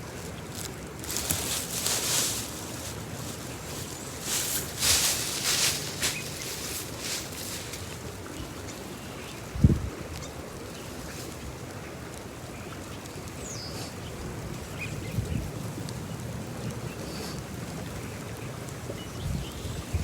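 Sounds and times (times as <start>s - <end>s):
creek running: 0.0s - 20.0s
hissy rustling: 0.4s - 8.2s.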